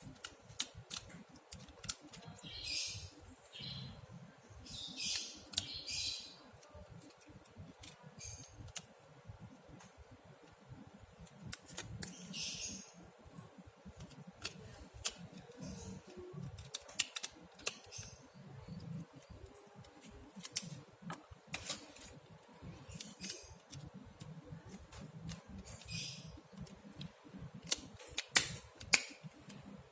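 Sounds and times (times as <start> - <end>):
sharp clicks and taps: 13.8 - 18.1, 22.9 - 29.8.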